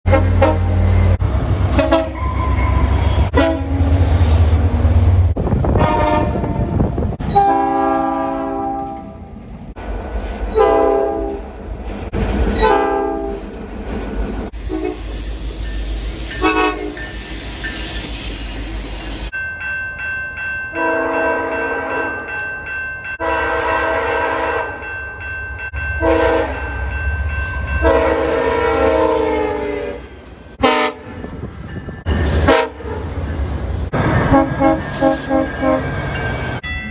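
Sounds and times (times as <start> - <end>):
train horn blasts: 0.0 - 2.6, 3.2 - 4.1, 5.6 - 9.4, 10.6 - 11.4, 12.6 - 13.4, 14.6 - 15.2, 16.3 - 17.1, 20.8 - 22.1, 23.2 - 24.8, 26.0 - 26.7, 27.8 - 31.2, 32.3 - 33.0, 34.0 - 36.3
passing trains rumbling: 0.0 - 36.9.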